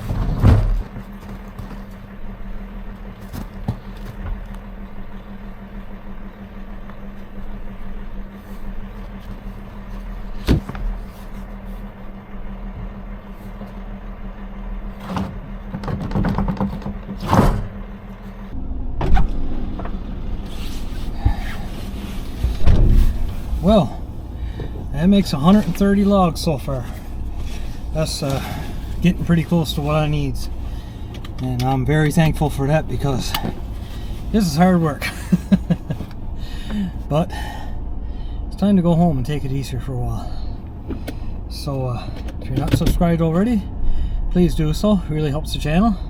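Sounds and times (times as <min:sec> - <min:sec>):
engine idling: 0:00.0 - 0:46.0
sharp knocks and scrapes: 0:15.0 - 0:17.7, 0:20.4 - 0:23.7.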